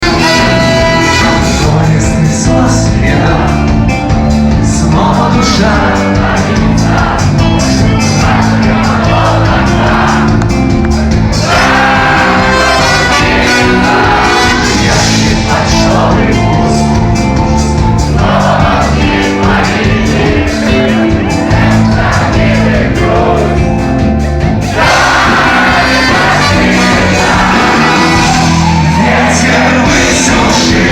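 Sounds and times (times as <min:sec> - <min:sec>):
person singing: 0:00.0 - 0:10.4, 0:11.4 - 0:24.1, 0:24.7 - 0:30.9
live band playing: 0:00.0 - 0:30.9.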